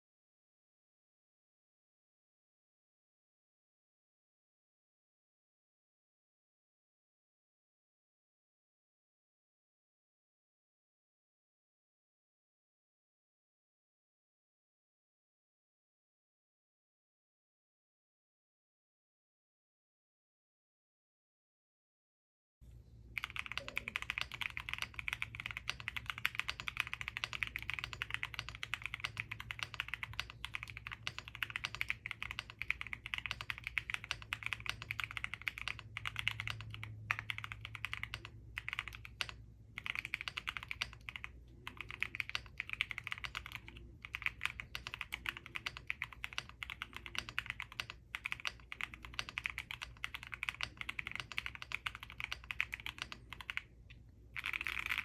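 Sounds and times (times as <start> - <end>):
mechanical keyboard typing: 23.2 - 53.7, 54.3 - 55.0.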